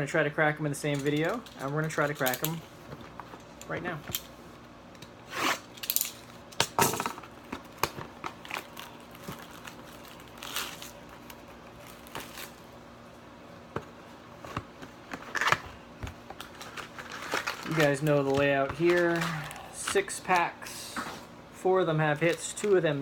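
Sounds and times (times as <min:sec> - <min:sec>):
plastic wrap crinkling: 0:07.4 - 0:12.7, 0:16.3 - 0:19.7.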